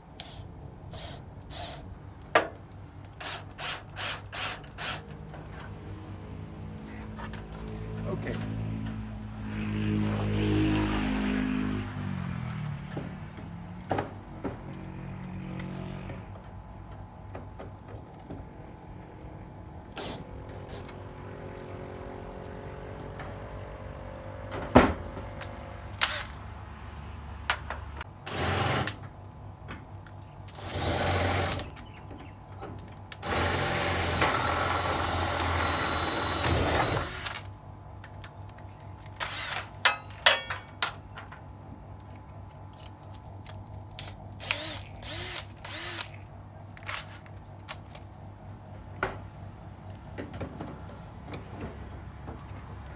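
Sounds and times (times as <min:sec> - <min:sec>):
power drill into hard wood: 0:01.0 - 0:01.8, 0:03.2 - 0:05.0, 0:26.0 - 0:26.4, 0:30.6 - 0:31.7, 0:33.2 - 0:37.5, 0:39.2 - 0:39.7, 0:44.4 - 0:46.2.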